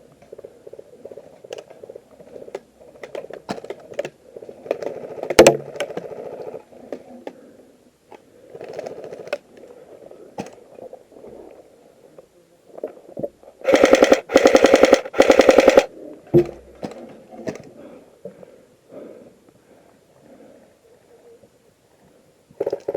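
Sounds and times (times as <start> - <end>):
airsoft rifle full-auto bursts: 13.7 - 15.9.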